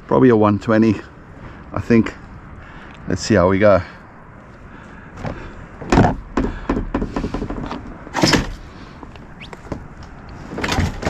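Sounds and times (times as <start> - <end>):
knocks and thuds: 5.2 - 8.6.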